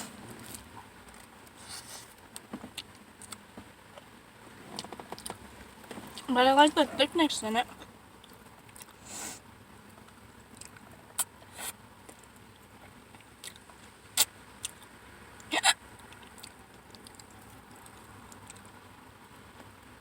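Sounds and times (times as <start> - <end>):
soft breath: 1.6 - 2.2, 9.0 - 9.4
person hiccupping: 15.5 - 15.8.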